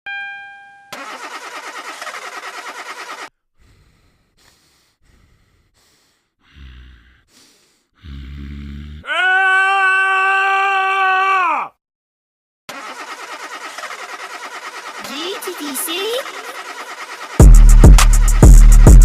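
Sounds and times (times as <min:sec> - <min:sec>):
car starter rapid clicking: 0:00.9 - 0:03.3, 0:12.7 - 0:19.0.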